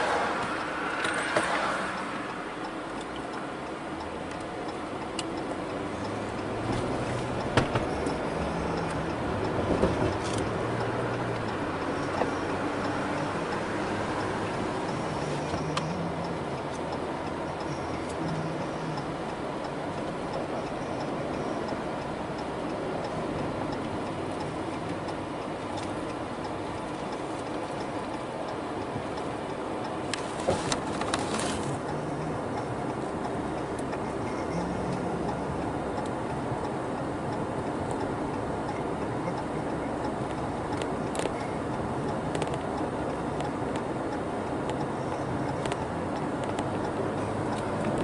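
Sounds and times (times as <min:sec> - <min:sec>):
car road and engine noise: 0:00.0 - 0:48.0
sharp clicks: 0:14.2 - 0:48.0.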